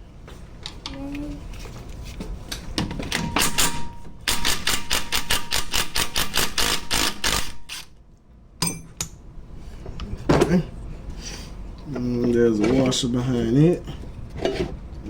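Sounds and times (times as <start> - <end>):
socket ratchet clicking: 4.3 - 7.9.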